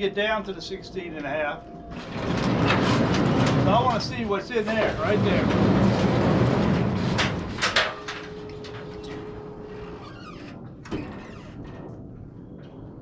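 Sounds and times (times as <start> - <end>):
band sawmill machinery running: 0.0 - 10.0
sharp metallic clanks and knocks: 1.9 - 9.3.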